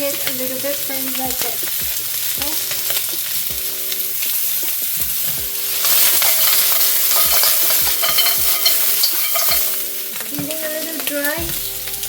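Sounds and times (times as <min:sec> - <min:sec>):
meat sizzling in a wok: 0:00.0 - 0:12.0
spatula scraping a pan: 0:05.2 - 0:09.9.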